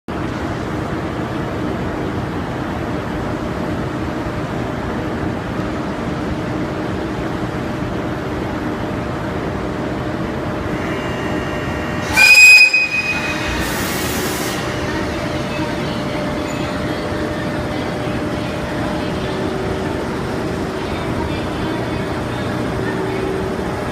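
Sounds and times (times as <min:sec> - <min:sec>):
electric locomotive humming: 0:00.2 - 0:23.9
high-pitched train horn blast: 0:10.8 - 0:16.8.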